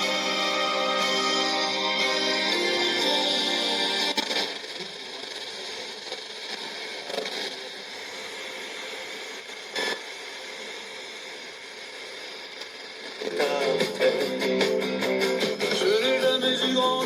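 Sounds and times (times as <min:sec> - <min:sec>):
radio music: 0:00.0 - 0:17.0
radio signal snatches: 0:00.0 - 0:17.0
radio static hiss: 0:00.0 - 0:17.0.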